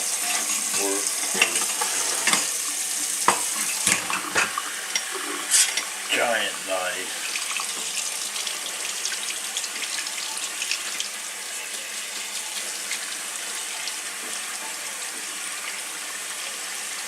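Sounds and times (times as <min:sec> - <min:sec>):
tap running into sink: 0:03.2 - 0:05.8.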